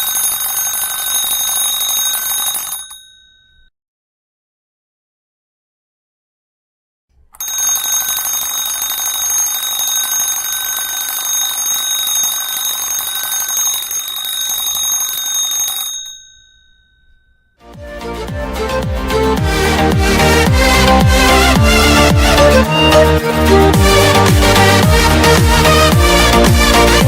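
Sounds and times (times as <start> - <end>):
electric school bell ringing: 0.0 - 3.7, 7.4 - 17.6
music: 17.6 - 27.0.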